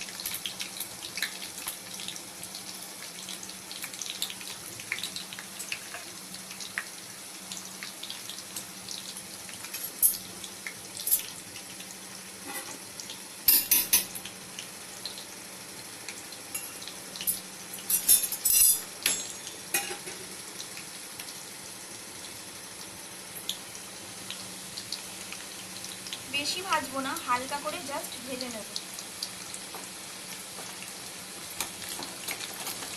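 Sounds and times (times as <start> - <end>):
potatoes sizzling in oil: 0.0 - 32.9.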